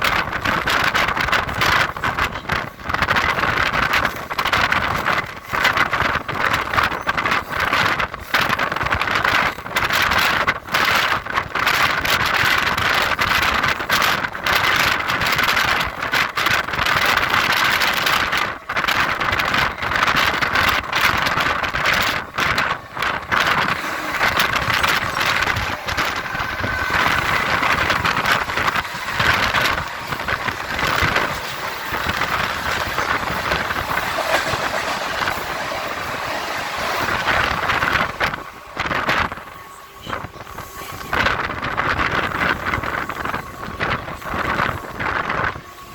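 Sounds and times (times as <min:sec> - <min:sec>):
moving train running: 0:00.0 - 0:45.9.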